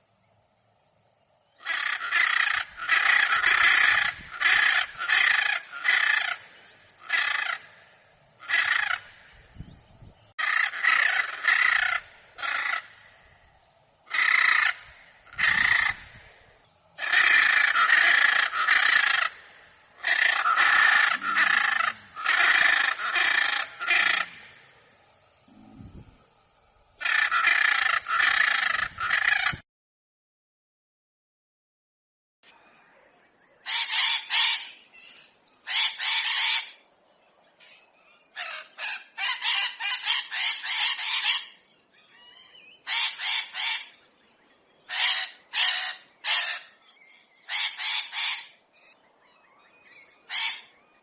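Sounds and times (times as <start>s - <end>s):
parrot screeching: 42.2s - 43.9s, 44.9s - 46.7s, 50.3s - 50.7s.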